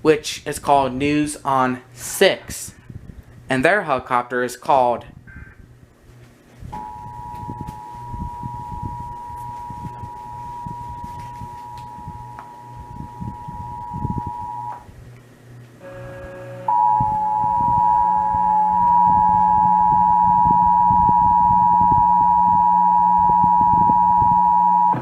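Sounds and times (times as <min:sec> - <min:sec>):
two-tone alert alarm over radio: 0:06.8 - 0:14.8, 0:15.8 - 0:25.0.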